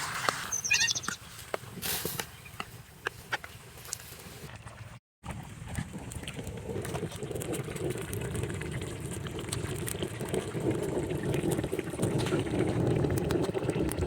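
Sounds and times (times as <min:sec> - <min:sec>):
chicken sizzling and bubbling: 0:05.2 - 0:14.0.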